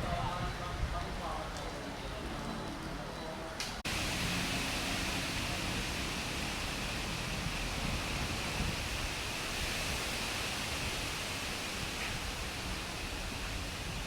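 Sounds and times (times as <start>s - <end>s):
strong wind: 0.0s - 2.4s, 3.8s - 14.0s
heavy rain: 3.8s - 14.0s.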